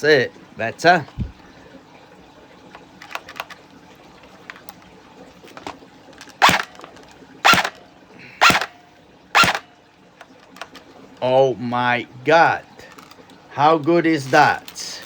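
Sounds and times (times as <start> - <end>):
airsoft gun firing: 6.4 - 7.8, 8.4 - 8.8, 9.4 - 9.7.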